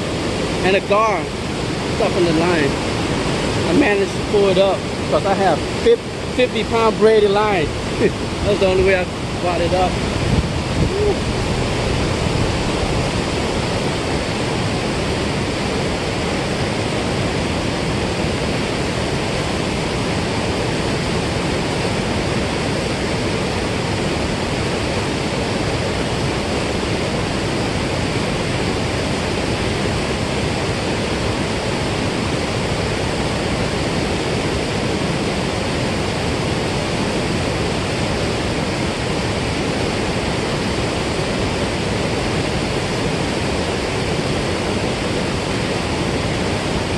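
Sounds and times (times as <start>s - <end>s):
water rushing through spillway: 0.0s - 46.9s.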